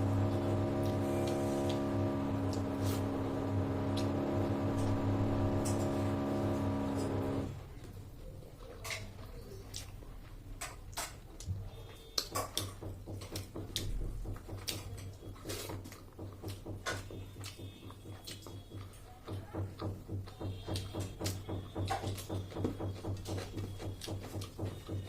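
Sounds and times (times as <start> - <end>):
low hum: 0.0 - 7.6
chewing with mouth clicks: 7.8 - 12.8, 13.4 - 21.4.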